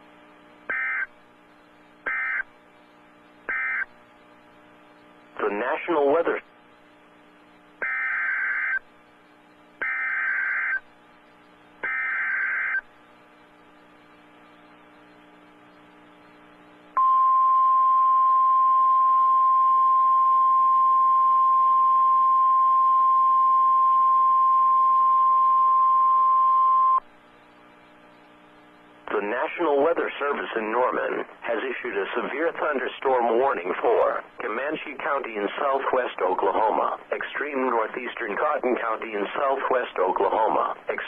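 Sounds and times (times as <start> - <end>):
buzzy digital data tones: 0.7 - 1.1, 2.0 - 2.5, 3.5 - 3.9, 7.8 - 8.9, 9.8 - 10.9, 11.8 - 12.9
weather radio alarm tone: 0.7 - 1.1, 2.1 - 2.5, 3.5 - 3.9, 7.8 - 8.9, 9.8 - 10.8, 11.8 - 12.9.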